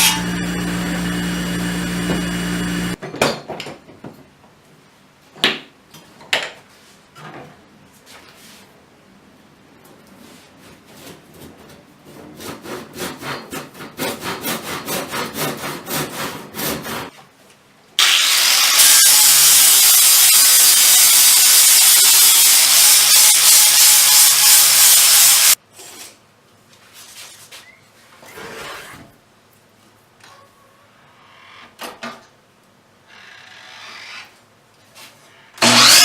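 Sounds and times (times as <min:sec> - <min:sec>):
hand saw cutting wood: 0:00.0 - 0:03.0, 0:12.1 - 0:17.1, 0:18.0 - 0:25.6, 0:35.6 - 0:36.0
power tool humming: 0:00.0 - 0:03.0, 0:18.0 - 0:25.6, 0:35.6 - 0:36.0.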